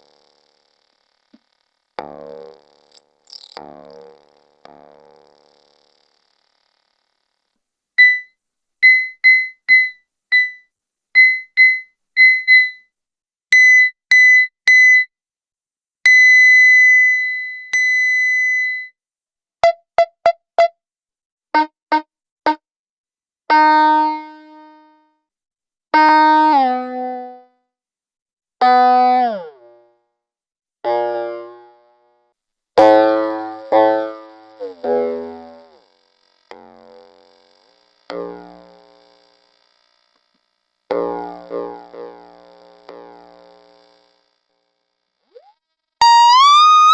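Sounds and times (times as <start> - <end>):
short high synth beeps: 8.9 - 10.6, 11.2 - 12.8.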